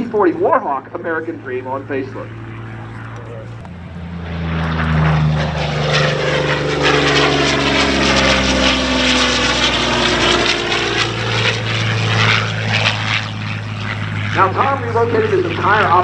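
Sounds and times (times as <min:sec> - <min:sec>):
propeller plane passing low: 0:00.0 - 0:16.0.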